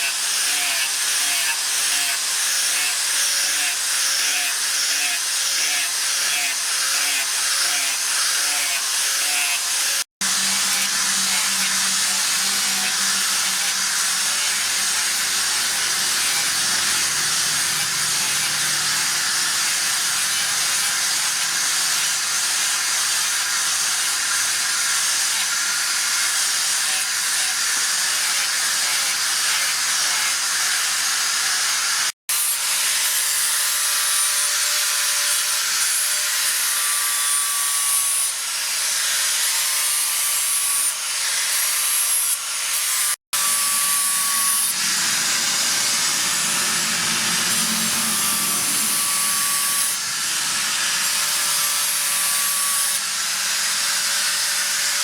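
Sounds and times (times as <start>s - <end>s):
power tool abrading hiss: 10.2s - 26.1s, 43.4s - 55.0s.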